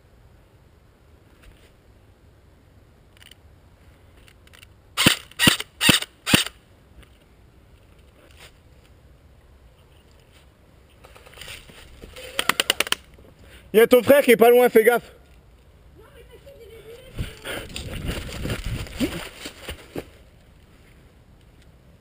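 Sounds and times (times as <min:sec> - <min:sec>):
airsoft rifle shots: 0:05.0 - 0:06.6.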